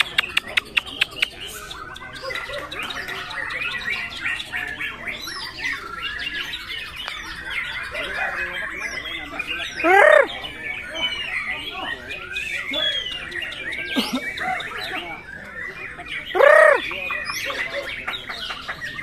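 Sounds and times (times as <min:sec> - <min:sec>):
downward-sweeping bird call: 0:16.3 - 0:16.9.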